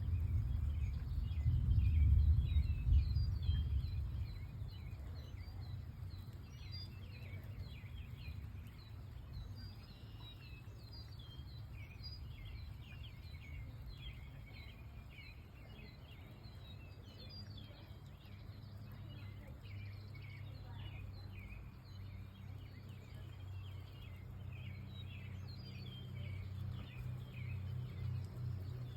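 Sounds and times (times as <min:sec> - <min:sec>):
birds chirping: 0:00.0 - 0:28.9
steady low hum: 0:00.0 - 0:28.9.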